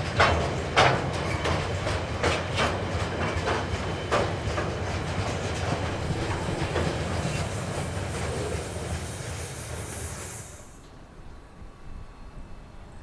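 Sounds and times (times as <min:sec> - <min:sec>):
train wheels rumbling and clattering: 0:00.0 - 0:11.0.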